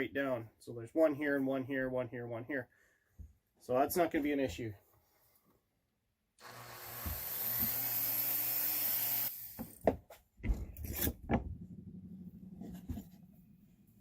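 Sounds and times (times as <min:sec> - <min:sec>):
rotary tool grinding steel: 0:06.4 - 0:09.4.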